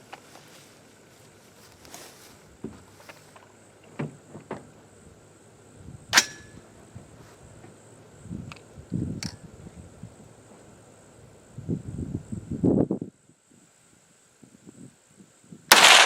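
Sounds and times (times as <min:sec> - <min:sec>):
rifle shot: 0:06.2 - 0:06.4, 0:15.7 - 0:16.0.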